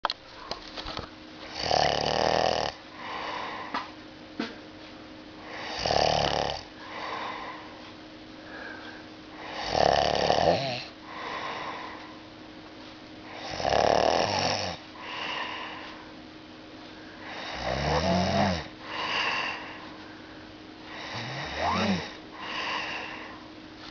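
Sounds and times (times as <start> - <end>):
loud rattling snores: 1.5 - 2.8, 5.5 - 6.7, 9.4 - 10.9, 13.4 - 14.8, 17.3 - 18.7, 20.9 - 22.2
soft breath sound: 6.8 - 9.7, 11.0 - 12.4, 15.0 - 16.2, 18.8 - 23.9.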